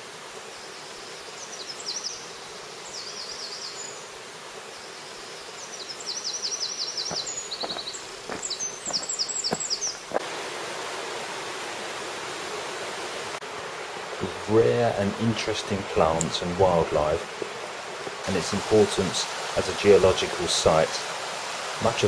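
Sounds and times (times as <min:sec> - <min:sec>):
steady hiss: 0:00.0 - 0:22.0
songbirds singing: 0:00.4 - 0:10.2.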